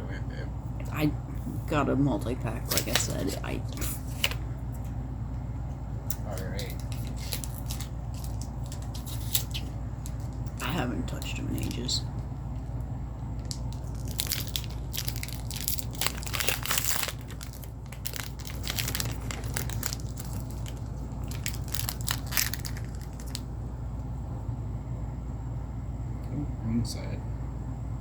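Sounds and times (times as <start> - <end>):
foil wrapper crinkling: 2.7 - 4.4, 6.4 - 11.8, 13.4 - 23.5.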